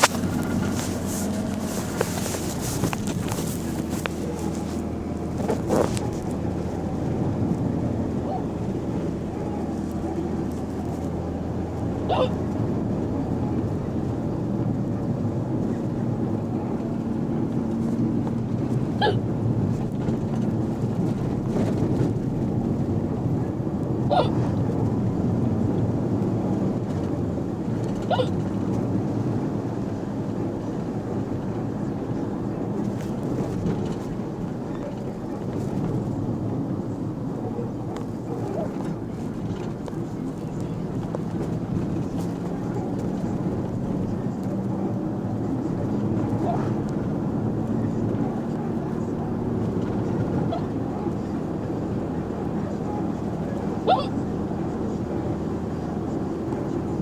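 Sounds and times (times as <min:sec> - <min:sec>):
low rumble of moving bus: 0:00.0 - 0:57.0
person hiccuping: 0:12.1 - 0:12.4, 0:19.0 - 0:19.2, 0:24.1 - 0:24.4, 0:28.1 - 0:28.4, 0:53.9 - 0:54.2.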